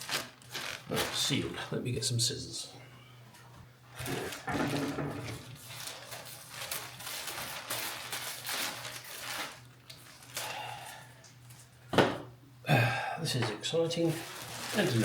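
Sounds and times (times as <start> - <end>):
plastic wrapping crinkling: 0.0 - 1.7, 3.9 - 11.7, 13.8 - 15.0.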